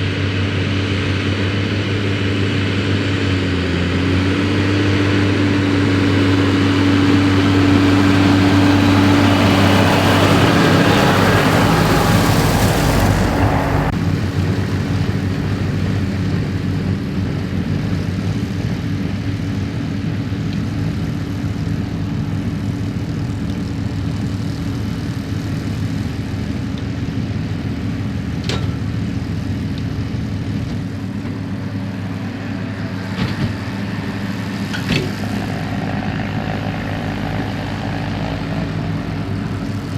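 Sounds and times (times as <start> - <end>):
tractor engine running: 0.0 - 39.9
loud rushing noise: 3.3 - 17.1.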